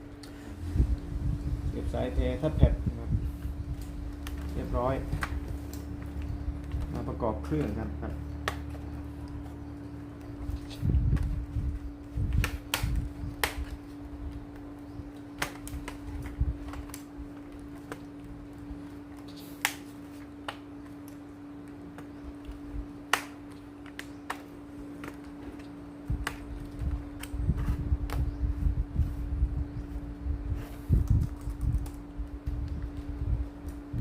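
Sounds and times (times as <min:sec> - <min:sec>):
steady low hum: 0:00.0 - 0:34.0
laptop plastic parts clicking: 0:31.0 - 0:32.8.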